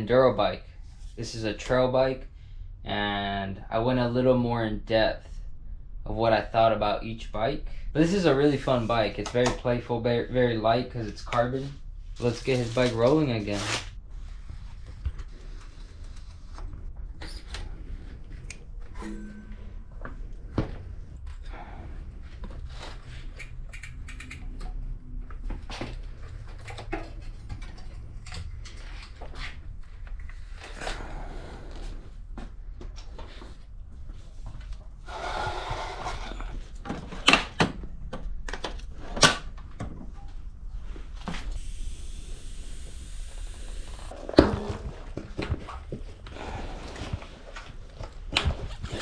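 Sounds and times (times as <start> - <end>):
steady hiss: 41.3 - 44.1.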